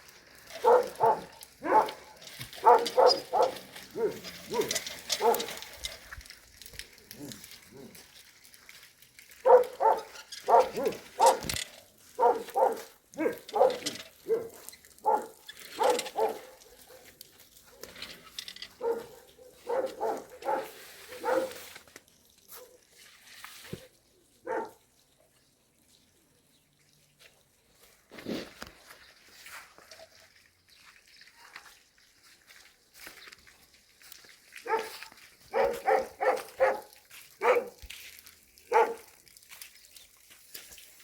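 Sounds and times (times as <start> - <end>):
dog barking: 0.6 - 5.6, 9.4 - 11.5, 12.2 - 17.1, 18.8 - 21.6, 24.4 - 24.8, 34.6 - 37.8, 38.7 - 39.1.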